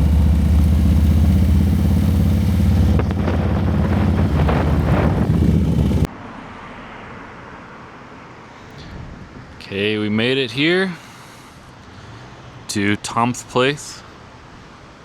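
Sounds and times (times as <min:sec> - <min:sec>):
motorcycle engine running: 0:00.0 - 0:06.1.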